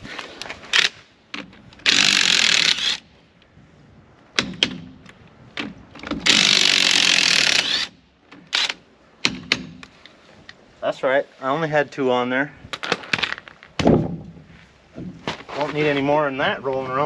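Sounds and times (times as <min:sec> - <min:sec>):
impact wrench hammering: 0:08.6 - 0:09.9.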